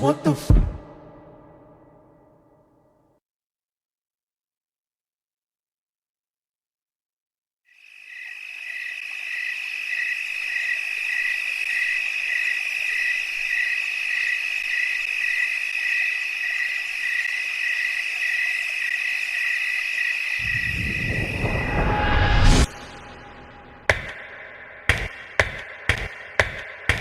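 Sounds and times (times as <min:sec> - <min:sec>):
high-pitched siren tone: 0:20.4 - 0:24.8.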